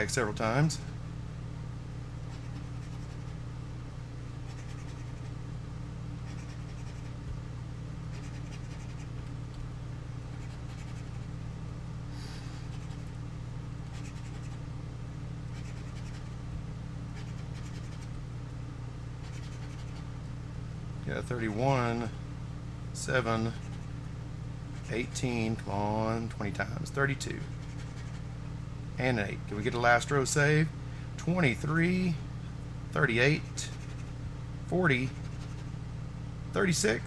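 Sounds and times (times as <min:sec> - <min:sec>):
low electrical hum: 0:00.0 - 0:37.0
lottery ticket being scratched: 0:02.3 - 0:03.4, 0:04.4 - 0:05.4, 0:06.2 - 0:07.2, 0:08.1 - 0:09.2, 0:10.3 - 0:11.3, 0:12.5 - 0:13.1, 0:13.9 - 0:14.6, 0:15.5 - 0:16.3, 0:17.2 - 0:18.1, 0:19.2 - 0:20.1, 0:27.1 - 0:28.3.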